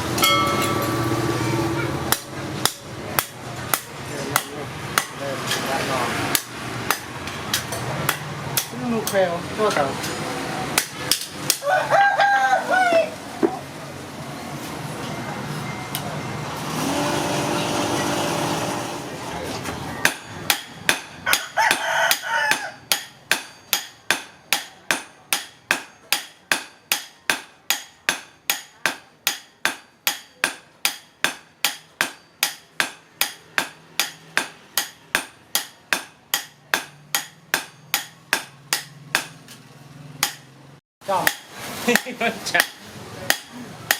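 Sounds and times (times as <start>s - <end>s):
hammer striking metal: 0.0s - 11.7s, 19.9s - 39.6s, 40.2s - 43.9s.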